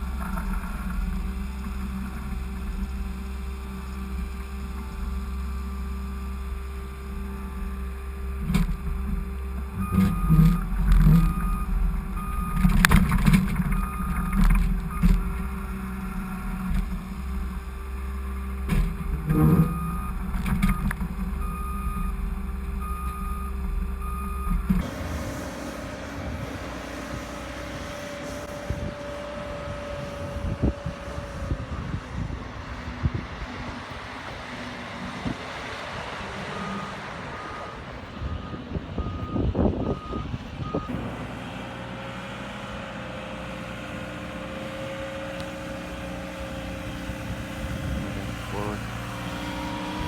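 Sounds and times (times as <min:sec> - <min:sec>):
skid steer engine running: 0:00.0 - 0:50.0
reversing alarm beeping: 0:00.2 - 0:33.8, 0:36.2 - 0:41.0.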